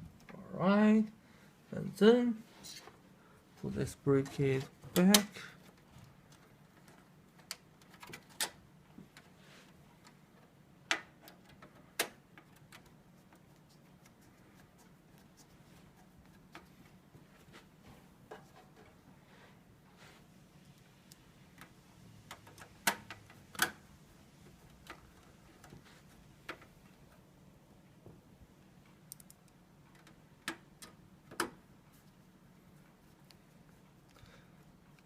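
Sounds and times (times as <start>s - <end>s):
faint steady hum: 0.0s - 35.0s
metal clicks and taps: 29.1s - 31.6s.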